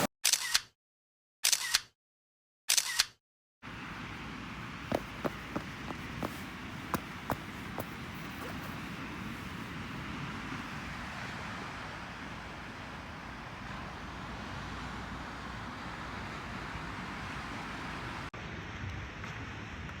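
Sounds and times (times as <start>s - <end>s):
rushing vehicle noise: 3.7s - 18.3s.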